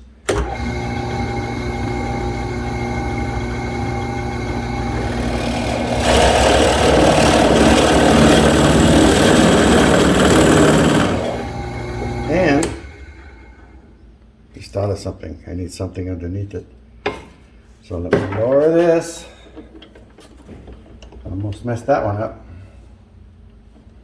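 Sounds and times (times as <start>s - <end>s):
drill press motor running: 0.3s - 13.9s
drill bit cutting into wood: 0.4s - 13.3s.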